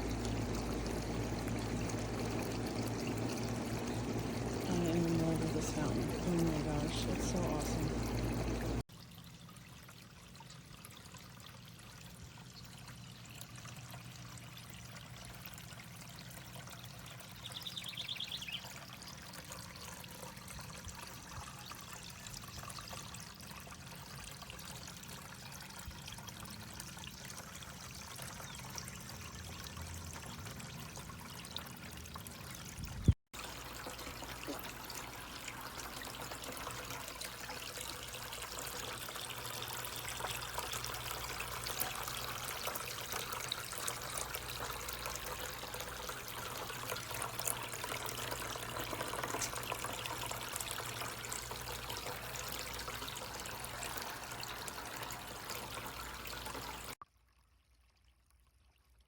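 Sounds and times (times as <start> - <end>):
fountain water trickling: 0.0 - 59.0.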